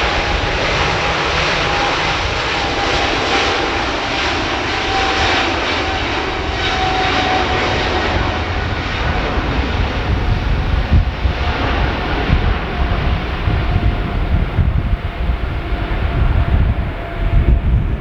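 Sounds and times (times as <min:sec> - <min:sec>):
jet engine roar: 0:00.0 - 0:18.0
low rumble: 0:06.2 - 0:18.0.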